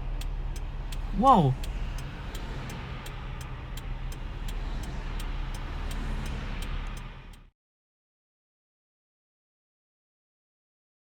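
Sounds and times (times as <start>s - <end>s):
hiss of rain and road: 0.0s - 7.5s
raindrops ticking on car: 0.2s - 7.4s.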